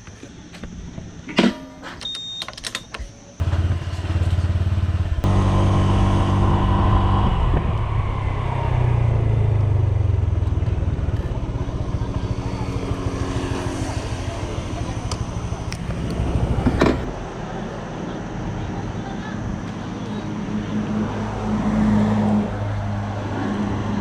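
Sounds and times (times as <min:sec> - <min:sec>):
motor scooter engine: 0:03.4 - 0:17.1.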